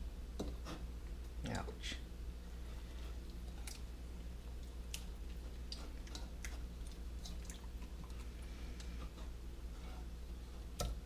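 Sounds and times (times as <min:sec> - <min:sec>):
steady low hum: 0:00.0 - 0:11.0
wet squishes of raw fish: 0:03.2 - 0:09.1.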